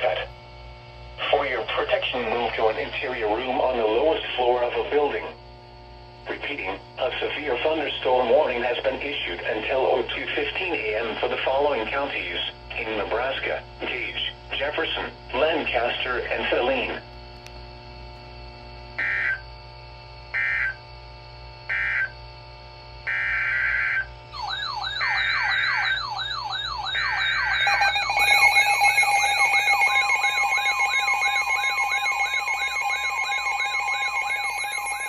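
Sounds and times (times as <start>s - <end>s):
wailing alarm tone: 19.0s - 19.6s, 20.3s - 20.8s, 21.6s - 22.2s, 23.0s - 35.0s
buzzy digital data bursts: 23.1s - 35.0s
steady two-tone attention signal: 24.4s - 35.0s.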